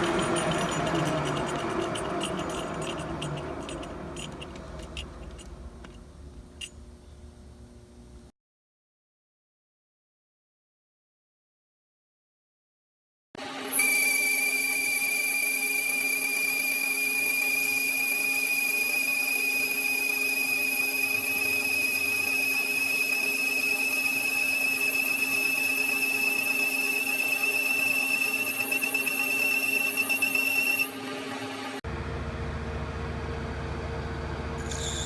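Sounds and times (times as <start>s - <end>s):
machine tool high whine: 0.0s - 5.7s, 13.5s - 31.8s
low hum: 0.0s - 8.3s.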